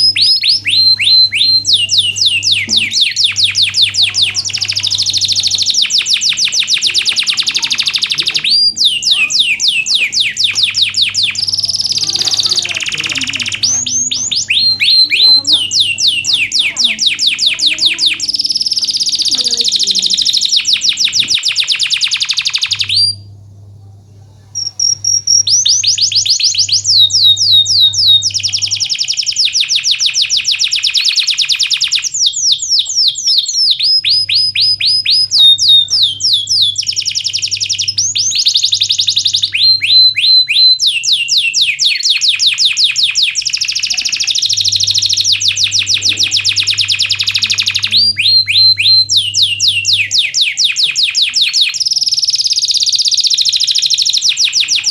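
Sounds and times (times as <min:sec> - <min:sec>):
canary singing trills: 0:00.0 - 0:54.9.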